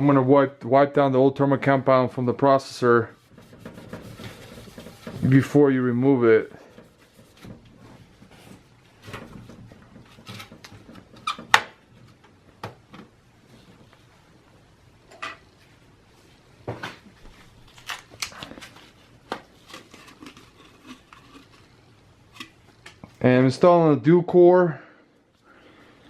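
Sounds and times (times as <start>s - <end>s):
paper towel rubbing: 2.8s - 10.6s.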